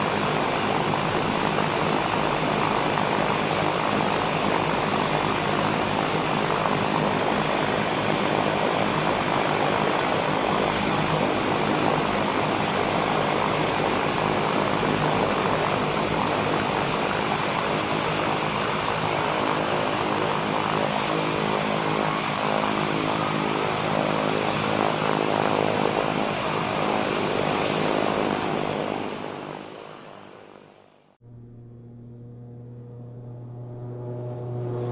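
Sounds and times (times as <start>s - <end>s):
propeller airplane engine: 0.0s - 34.9s.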